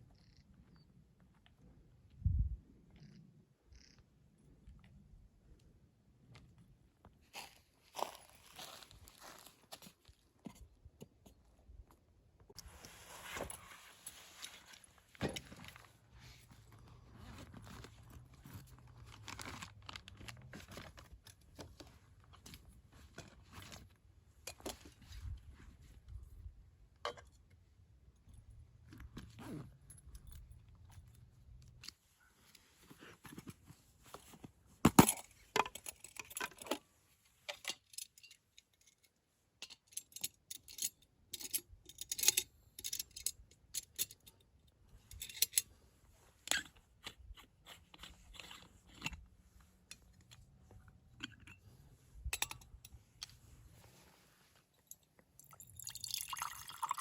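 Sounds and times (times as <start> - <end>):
objects being handled: 28.9 - 44.4, 45.0 - 55.4.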